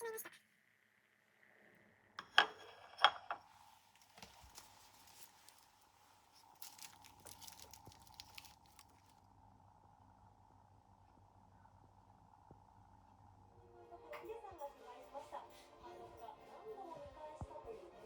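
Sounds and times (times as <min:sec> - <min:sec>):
faint steady hum: 0:00.0 - 0:18.0
light crinkling and crackling: 0:02.5 - 0:09.3.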